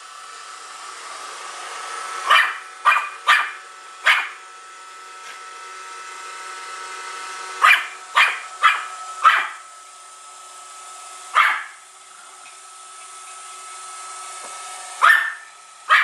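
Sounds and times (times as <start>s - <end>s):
robot vacuum humming: 0.0s - 16.0s
small dog barking: 2.2s - 4.4s, 7.6s - 9.6s, 11.3s - 11.8s, 15.0s - 16.0s.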